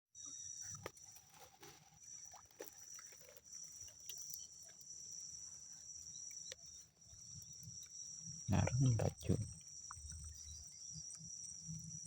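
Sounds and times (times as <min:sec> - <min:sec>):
insects chirring: 0:00.2 - 0:12.0
faint clicks and rustles: 0:00.6 - 0:08.3.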